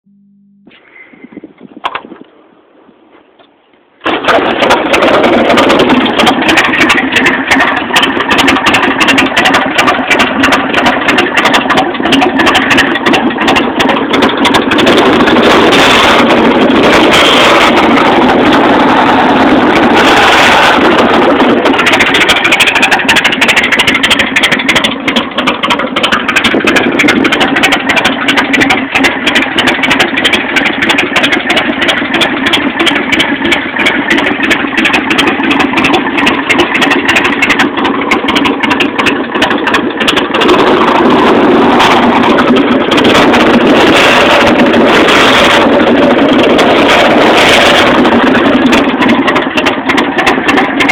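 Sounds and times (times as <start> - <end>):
motorcycle engine running: 4.1 - 50.9.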